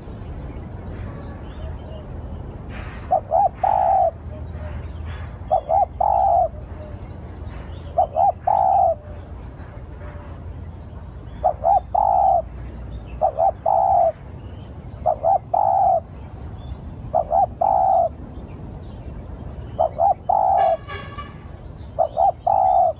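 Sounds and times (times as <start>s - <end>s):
small birds chirping: 0.0s - 22.9s
dove cooing: 2.7s - 9.2s, 11.3s - 12.6s, 13.2s - 14.2s, 15.0s - 16.2s, 17.1s - 18.2s, 19.8s - 21.1s, 21.9s - 22.9s.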